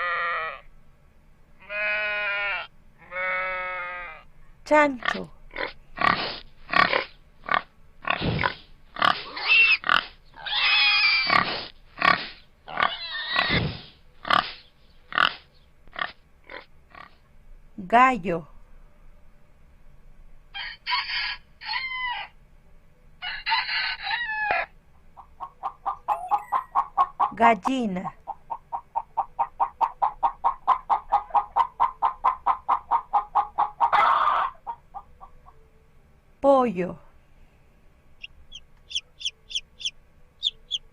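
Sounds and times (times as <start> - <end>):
pig squealing: 5.0 - 14.5, 38.9 - 40.8
pig grunting: 5.0 - 15.4
hen squawking: 9.0 - 11.4, 12.7 - 13.6, 38.2 - 40.9
hen clucking: 23.2 - 35.7, 38.2 - 40.9.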